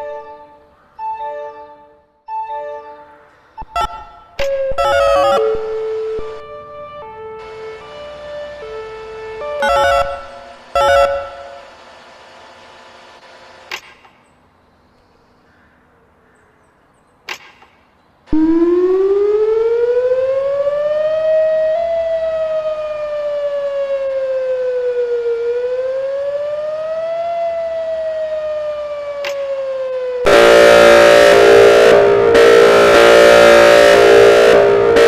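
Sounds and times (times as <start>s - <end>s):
warning siren wailing: 0.0s - 11.8s, 18.3s - 35.0s
harsh multi-tone siren blast: 0.0s - 11.9s, 18.3s - 35.0s
sharp clicks: 13.7s - 14.3s, 17.2s - 17.9s, 29.2s - 29.5s.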